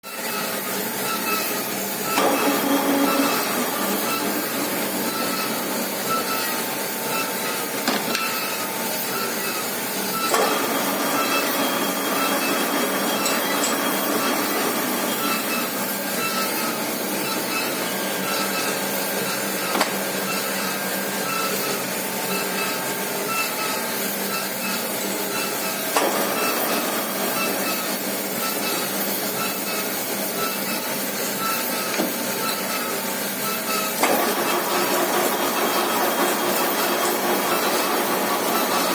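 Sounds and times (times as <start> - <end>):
milling machine running: 0.2 - 38.9.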